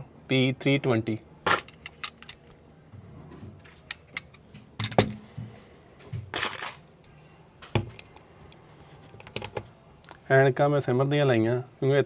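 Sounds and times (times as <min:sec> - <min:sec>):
pistol metallic clicks and clatter: 0:01.5 - 0:02.5.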